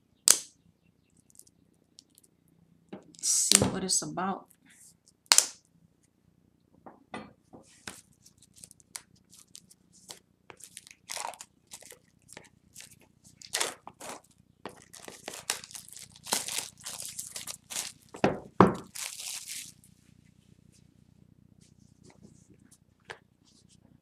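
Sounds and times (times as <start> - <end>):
plastic shrink-wrap crinkling: 8.0 - 19.9.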